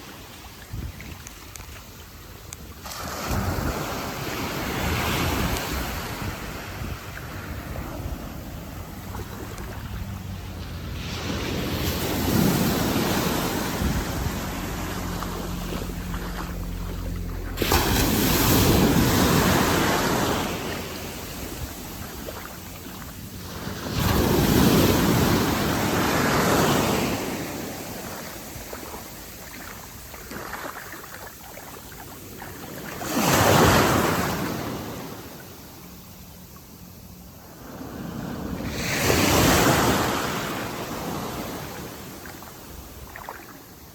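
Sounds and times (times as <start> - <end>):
small waves washing in: 0.0 - 43.9.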